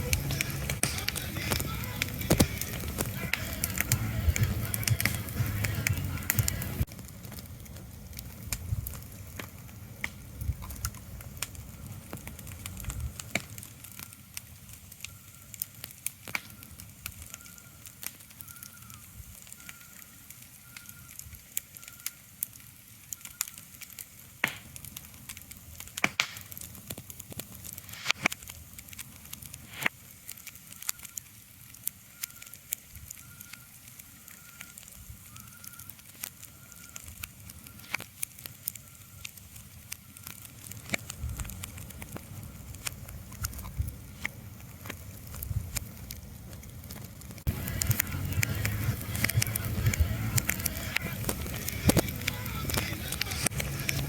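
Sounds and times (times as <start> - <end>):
crackles and clicks: 0.0 - 54.0.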